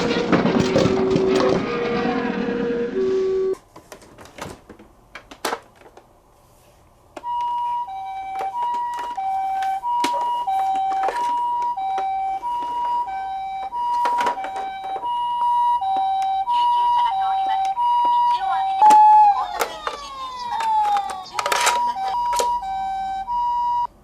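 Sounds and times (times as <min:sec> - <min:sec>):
toy electronic two-tone siren: 0:07.2 - 0:23.9
toy cars clicking and knocking: 0:08.4 - 0:12.9, 0:17.6 - 0:22.6.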